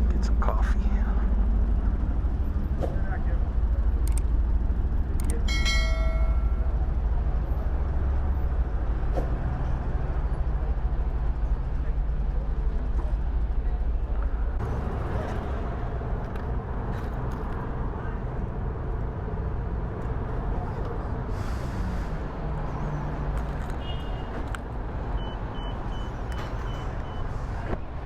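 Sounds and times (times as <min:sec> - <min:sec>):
street traffic: 0:00.0 - 0:28.0
reversing alarm beeping: 0:25.2 - 0:27.3.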